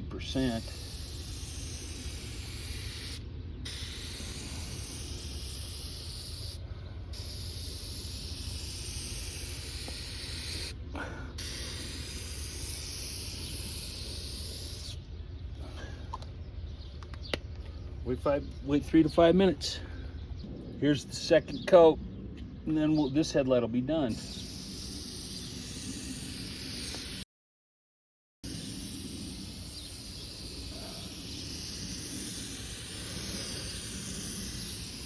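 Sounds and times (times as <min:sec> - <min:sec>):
aerosol can spraying hiss: 0:00.3 - 0:10.8, 0:11.4 - 0:15.0, 0:24.1 - 0:27.3, 0:28.4 - 0:35.0.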